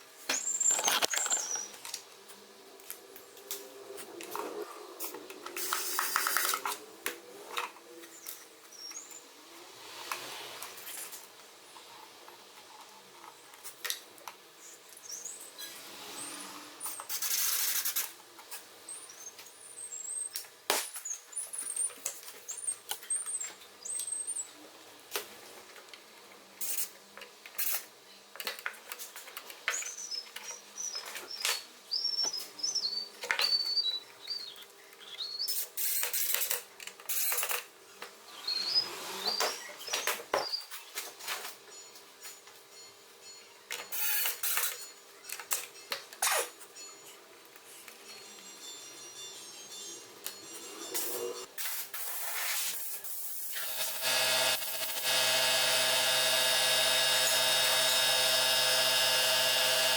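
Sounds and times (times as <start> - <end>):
small bird chirping: 0.4 - 1.8, 29.7 - 35.6
short hissing noises: 15.8 - 18.2, 51.0 - 53.8.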